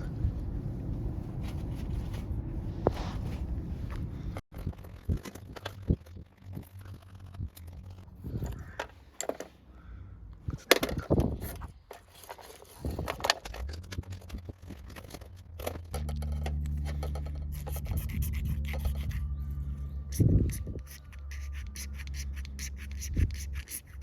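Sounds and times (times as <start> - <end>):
steady low hum: 0.0 - 4.4, 15.6 - 24.0
scraping and clicking of handling: 10.5 - 19.1.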